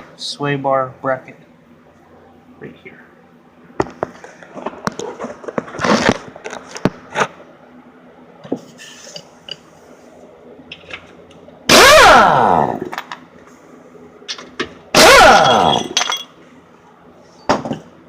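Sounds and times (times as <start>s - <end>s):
tools clinking against metal: 15.3s - 16.3s.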